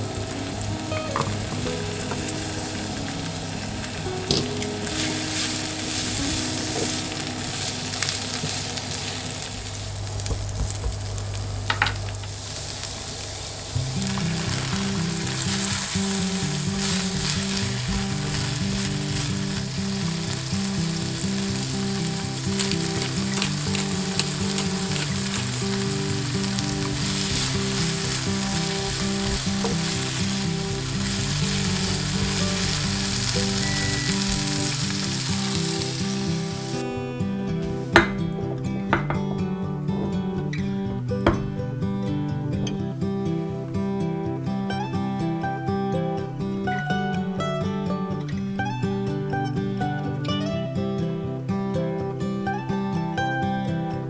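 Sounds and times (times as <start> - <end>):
light background music: 0.0 - 12.1, 13.7 - 54.0
beans sizzling in oil: 0.0 - 40.0
utensil scraping and tapping pan: 37.6 - 40.4.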